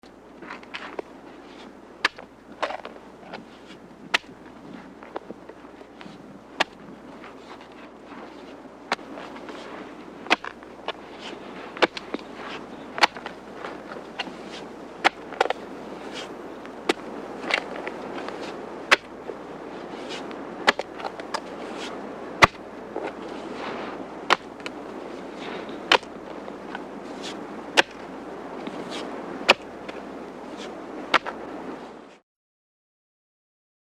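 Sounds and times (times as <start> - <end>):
gritty scraping: 0.4 - 32.1
digging tool striking ground: 2.0 - 4.4, 5.9 - 7.8, 8.9 - 19.2, 20.0 - 24.8, 25.8 - 28.0, 30.6 - 31.4.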